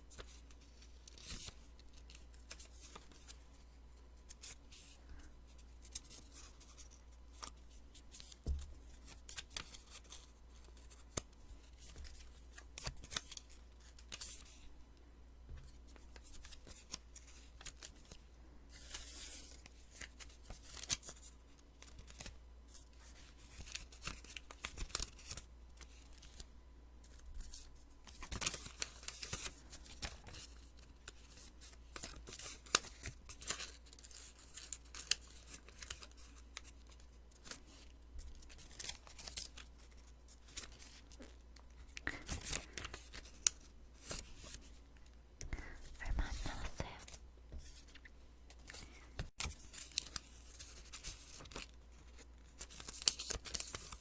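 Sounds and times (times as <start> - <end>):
paper rustling: 27.0 - 44.8, 45.8 - 54.0.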